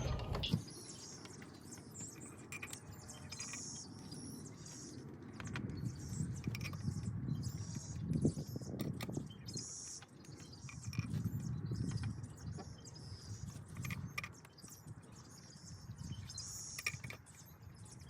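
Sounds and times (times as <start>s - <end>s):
low uneven rumble: 0.0s - 0.6s
birds chirping: 0.0s - 18.0s
metal tools clicking and clinking: 2.0s - 4.2s, 16.6s - 17.3s.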